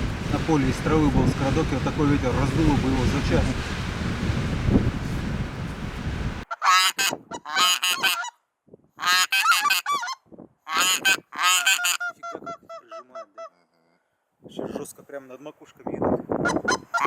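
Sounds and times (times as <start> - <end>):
wind rumble on microphone: 0.0 - 8.1, 10.2 - 11.3, 14.4 - 15.0, 15.8 - 17.0
geese honking: 6.5 - 8.3, 9.0 - 13.5, 16.4 - 17.0.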